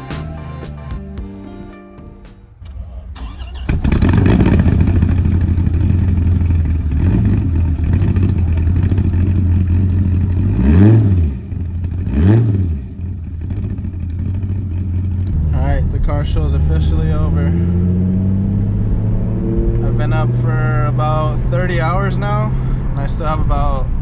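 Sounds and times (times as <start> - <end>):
car engine running and revving: 3.7 - 15.5, 16.2 - 22.5.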